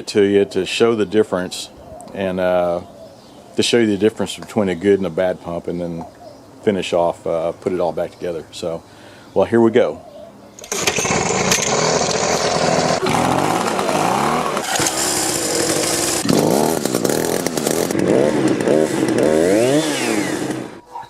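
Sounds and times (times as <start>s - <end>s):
power tool running: 10.6s - 20.8s.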